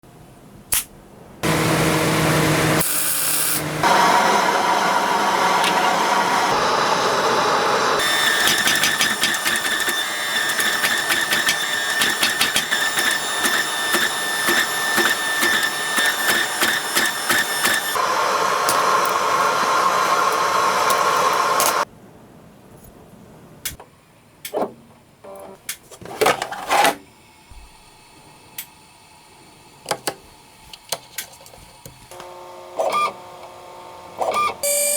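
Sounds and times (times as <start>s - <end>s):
cnc mill spindle whining: 1.4s - 21.8s.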